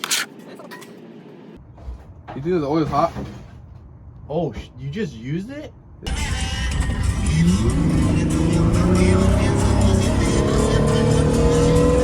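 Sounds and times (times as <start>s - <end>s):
loud music with a beat: 6.1s - 12.0s
car engine accelerating: 6.7s - 12.0s.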